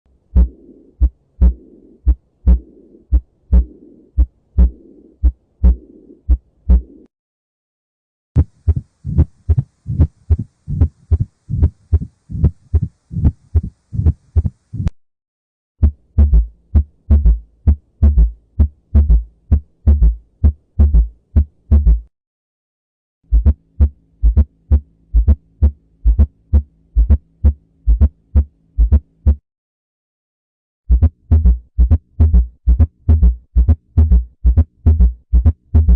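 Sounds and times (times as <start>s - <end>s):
heartbeats: 0.3s - 7.0s, 8.4s - 14.9s, 15.8s - 22.1s, 23.3s - 29.4s, 30.9s - 35.9s
rushing heart murmur: 0.4s - 7.0s, 8.4s - 14.9s, 15.8s - 22.1s, 23.3s - 29.4s, 30.9s - 35.9s.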